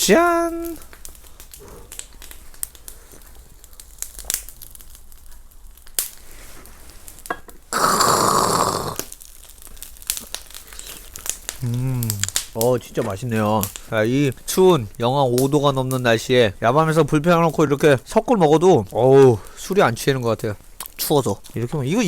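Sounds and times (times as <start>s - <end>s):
person rasping exhale: 7.8s - 9.1s, 11.6s - 12.3s.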